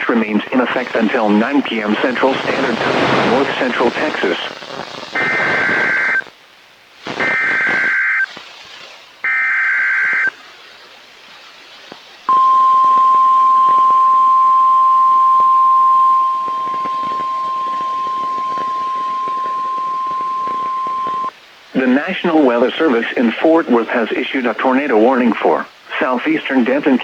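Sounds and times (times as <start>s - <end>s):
steady alarm tone: 12.3s - 21.3s
warbling digital data bursts: 16.4s - 21.3s.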